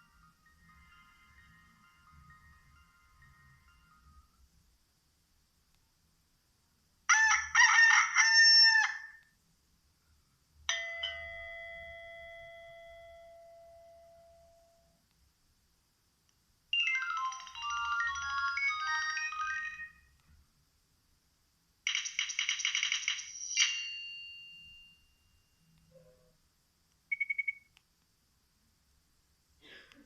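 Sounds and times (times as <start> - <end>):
phone ringtones: 16.8 - 20.0, 27.1 - 27.7.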